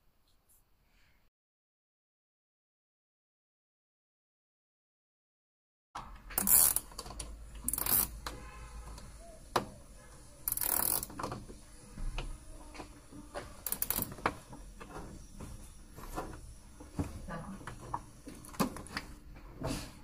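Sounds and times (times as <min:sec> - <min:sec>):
scratchy plastic rasps: 0:10.5 - 0:11.4.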